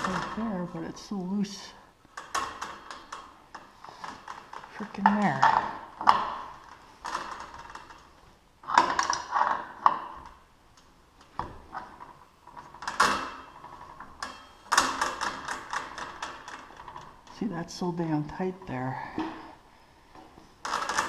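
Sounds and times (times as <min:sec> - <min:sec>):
metal chain clinking and rattling: 0:02.1 - 0:10.4, 0:11.6 - 0:17.4, 0:20.6 - 0:21.0.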